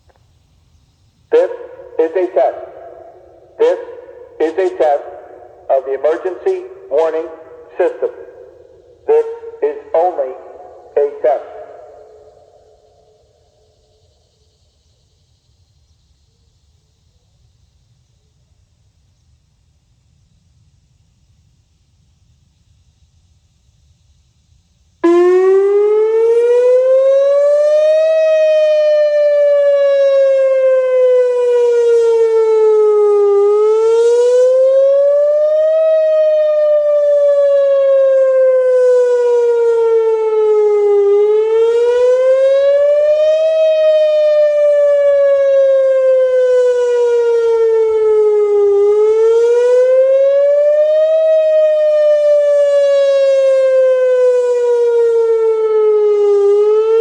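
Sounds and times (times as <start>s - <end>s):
outdoor warning siren wailing: 1.3s - 13.8s, 25.0s - 57.0s.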